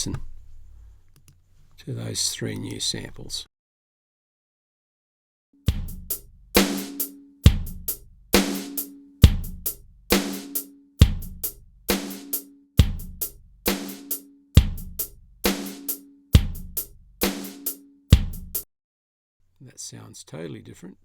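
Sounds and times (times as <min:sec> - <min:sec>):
drum loop groove: 0:05.6 - 0:18.6.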